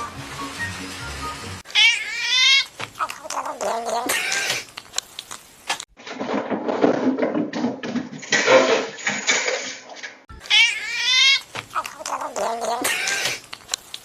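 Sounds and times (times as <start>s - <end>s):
cats meowing and yowling: 1.7s - 4.5s, 10.4s - 13.4s.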